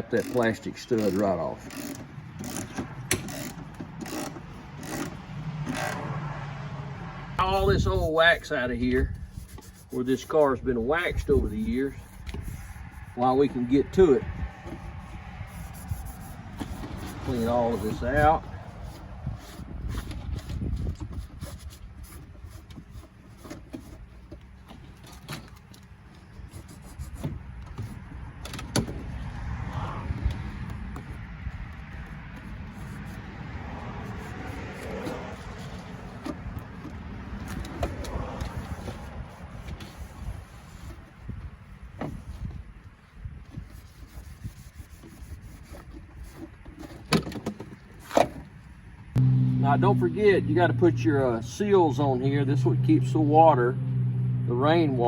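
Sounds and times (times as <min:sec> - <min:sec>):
scraping and rubbing wax: 0:07.4 - 0:25.7, 0:31.9 - 0:41.3.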